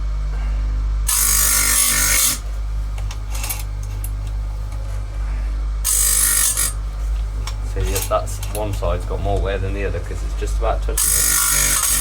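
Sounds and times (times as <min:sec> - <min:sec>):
grinder motor humming: 0:00.0 - 0:12.0
grinding wheel on saw chain: 0:01.1 - 0:02.4, 0:05.8 - 0:06.8, 0:07.6 - 0:12.0.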